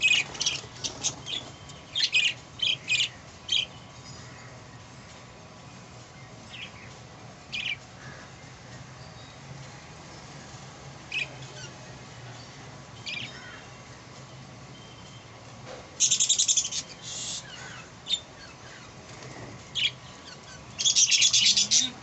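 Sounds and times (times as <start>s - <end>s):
budgie chicks chirping: 0.0s - 3.7s, 16.0s - 22.0s
rapid raspy chatter: 16.4s - 22.0s.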